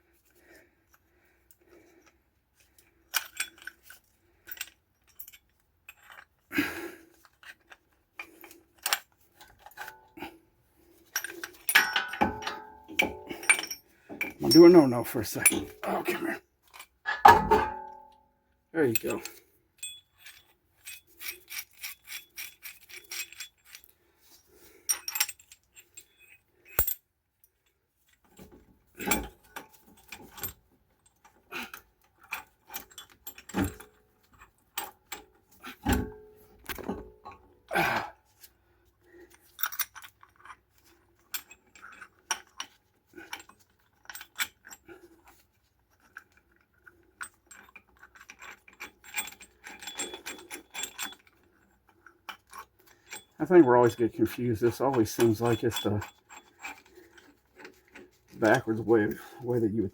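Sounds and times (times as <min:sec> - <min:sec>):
metallic tool clicks and scraping: 0:18.8 - 0:24.0, 0:24.7 - 0:37.4, 0:46.0 - 0:59.9.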